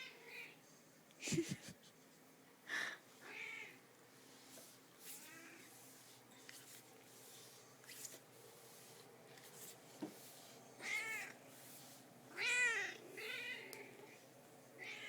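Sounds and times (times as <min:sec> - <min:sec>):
cat meowing: 0:12.3 - 0:14.2, 0:14.8 - 0:15.0.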